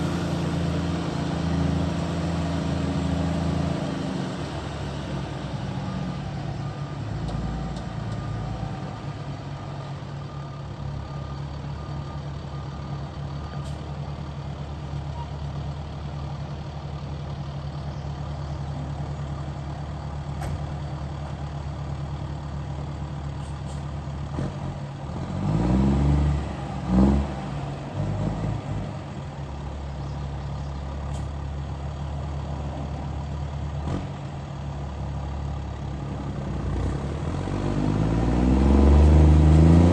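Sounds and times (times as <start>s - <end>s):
diesel engine running and revving: 0.0s - 39.9s.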